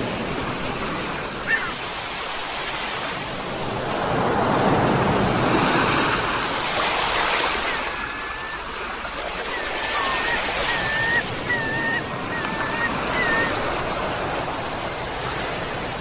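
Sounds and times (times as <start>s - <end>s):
sea waves washing on shore: 0.0s - 16.0s
seagull calls: 1.4s - 2.0s, 7.1s - 14.1s.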